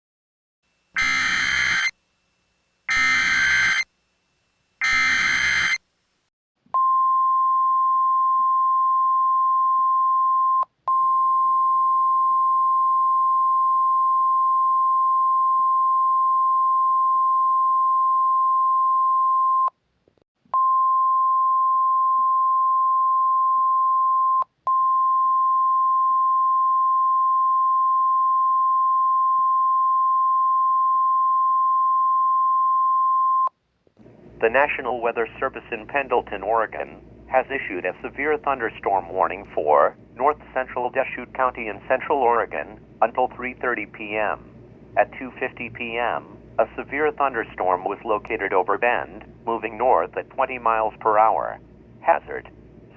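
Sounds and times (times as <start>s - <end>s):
digital data screech: 1.0s - 1.9s, 2.9s - 3.8s, 4.8s - 5.8s
steady warning alarm tone: 1.0s - 2.0s, 2.9s - 3.9s, 4.8s - 5.8s.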